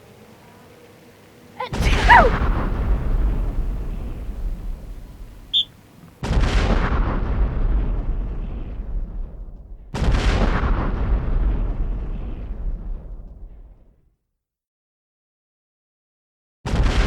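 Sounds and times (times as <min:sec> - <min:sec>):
loud booms with rumbling tail: 0:06.2 - 0:13.0.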